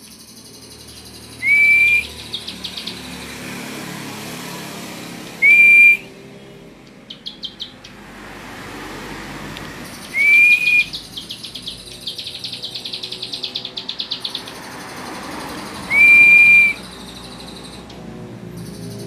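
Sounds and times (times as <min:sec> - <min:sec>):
bird whistling and trilling: 0:00.1 - 0:03.0, 0:05.4 - 0:06.1, 0:07.1 - 0:07.8, 0:10.0 - 0:14.6, 0:15.8 - 0:17.9.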